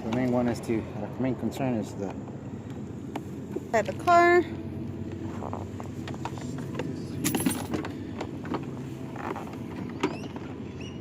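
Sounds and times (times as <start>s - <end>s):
steady low hum: 0.0s - 11.0s
keys jingling and clicking: 7.2s - 7.9s.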